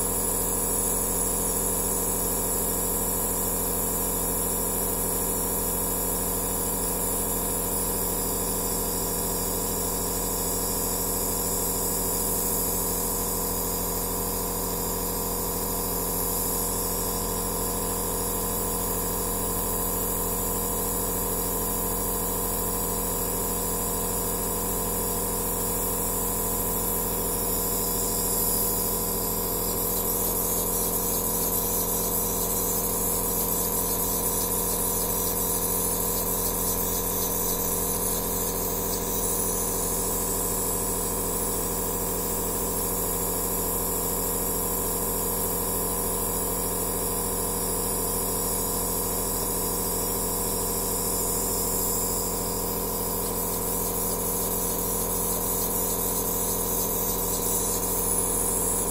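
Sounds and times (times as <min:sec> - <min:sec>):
nebulizer motor hum: 0:24.0 - 0:42.6, 0:49.6 - 0:58.9.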